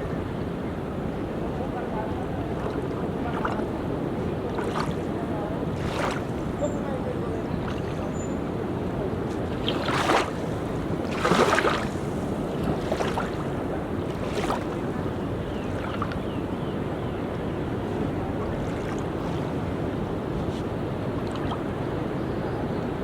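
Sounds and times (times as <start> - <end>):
waves washing onto beach: 0.0 - 23.0.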